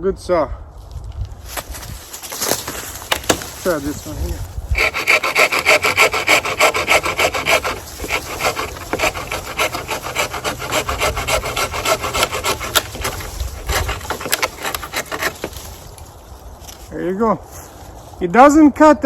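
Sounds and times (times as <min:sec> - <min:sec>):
hand saw cutting branch: 0:02.2 - 0:16.0.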